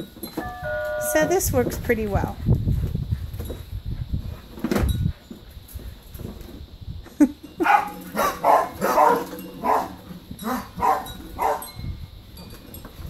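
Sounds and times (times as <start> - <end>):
puppies yipping and whining: 7.6 - 11.7.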